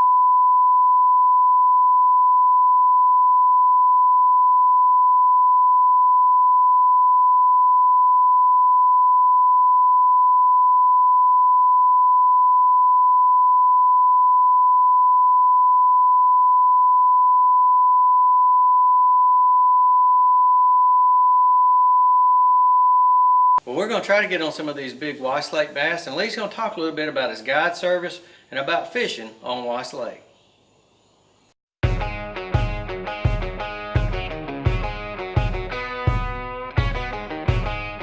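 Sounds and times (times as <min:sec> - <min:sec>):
steady test tone beep: 0:00.0 - 0:23.6.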